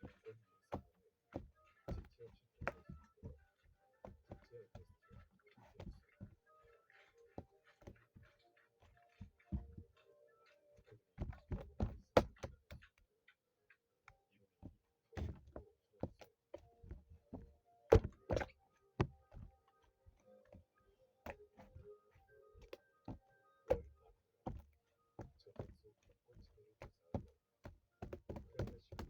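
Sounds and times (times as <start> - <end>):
faint background music: 0.0 - 29.0
knocks and thumps: 1.4 - 3.4, 9.1 - 9.9, 11.2 - 12.9, 14.6 - 19.5, 26.8 - 29.0.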